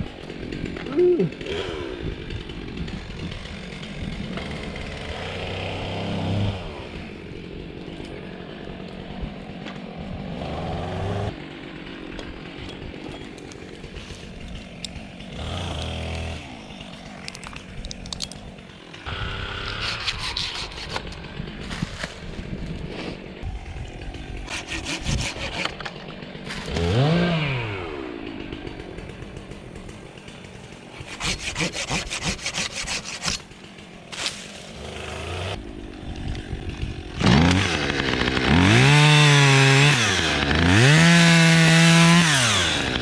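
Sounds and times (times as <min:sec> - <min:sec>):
chainsaw idling and revving: 0:00.0 - 0:43.0.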